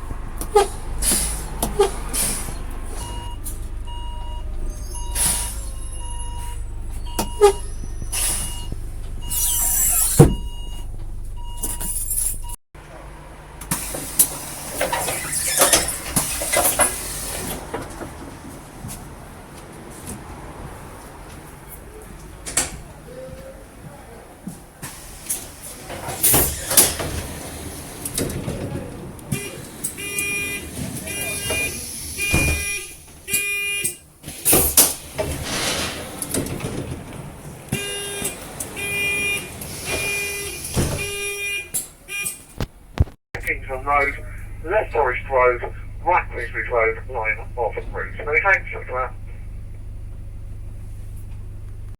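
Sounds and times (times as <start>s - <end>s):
air brakes clunking and hissing: 0.0s - 12.6s, 13.6s - 19.1s, 24.8s - 42.6s
bus engine humming: 0.0s - 51.9s
pneumatic door air hiss: 0.6s - 2.6s, 5.0s - 5.7s, 7.3s - 8.7s, 9.3s - 10.4s, 26.1s - 27.8s, 34.3s - 36.5s
warning beep: 3.0s - 12.6s, 30.0s - 33.0s.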